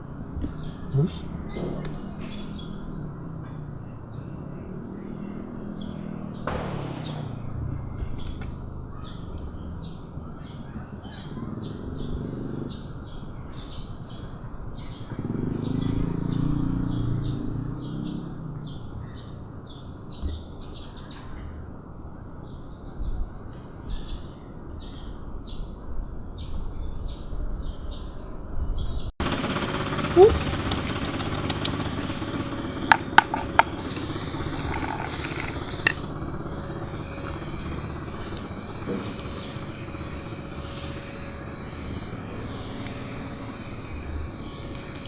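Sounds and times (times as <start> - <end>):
small birds chirping: 0.0 - 21.7, 27.1 - 45.0
low drawn-out rumbles: 29.2 - 42.2.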